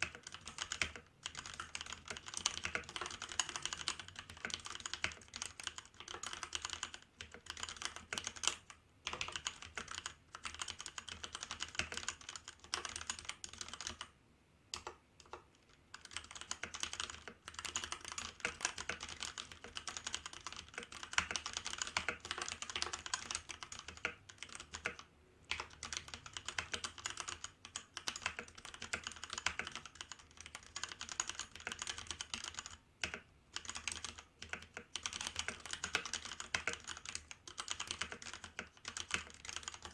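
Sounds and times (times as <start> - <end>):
mechanical keyboard typing: 0.0 - 14.1, 14.7 - 39.9.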